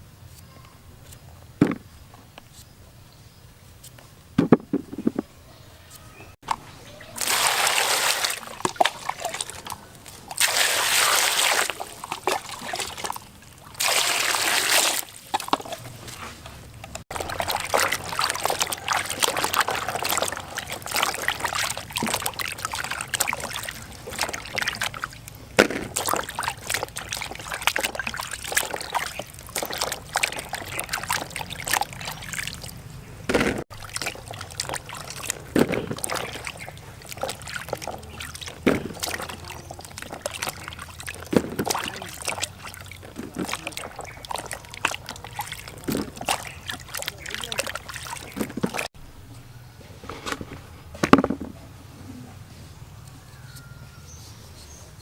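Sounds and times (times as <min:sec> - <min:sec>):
water splashing and sloshing: 0:06.4 - 0:49.0, 0:50.0 - 0:51.9
water pouring: 0:06.8 - 0:49.0.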